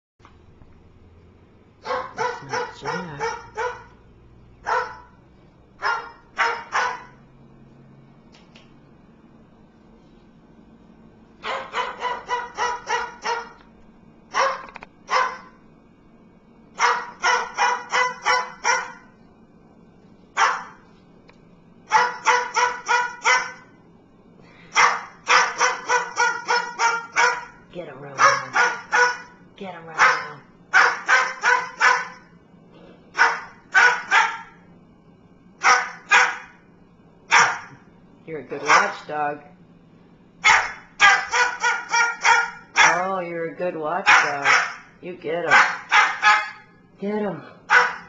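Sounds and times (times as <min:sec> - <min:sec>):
cockatoo barking like a dog: 0:01.8 - 0:04.0, 0:04.6 - 0:05.2, 0:05.8 - 0:07.2, 0:11.4 - 0:13.6, 0:14.3 - 0:15.6, 0:16.8 - 0:19.1, 0:20.4 - 0:20.8, 0:21.9 - 0:23.7, 0:24.7 - 0:27.6, 0:28.2 - 0:29.4, 0:30.0 - 0:32.3, 0:33.1 - 0:34.6, 0:35.6 - 0:36.6, 0:37.3 - 0:37.9, 0:38.6 - 0:39.0, 0:40.4 - 0:43.0, 0:44.0 - 0:46.8, 0:47.6 - 0:48.0.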